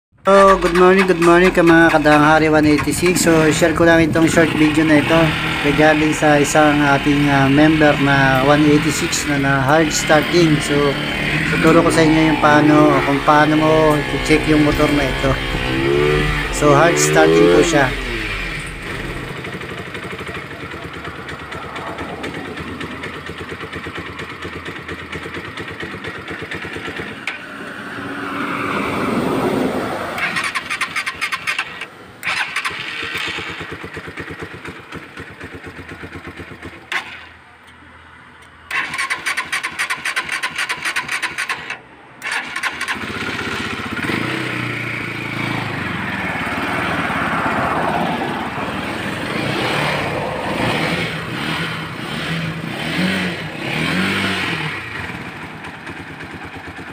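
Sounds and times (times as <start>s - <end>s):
motorcycle engine running: 0.3s - 28.1s, 32.2s - 37.3s, 42.4s - 56.9s
motorcycle engine cranking: 0.4s - 27.4s, 30.2s - 37.8s, 38.7s - 46.8s.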